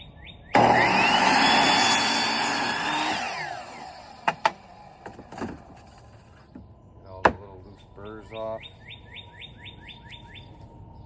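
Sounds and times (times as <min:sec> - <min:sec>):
power saw cutting pipe: 0:00.6 - 0:05.2.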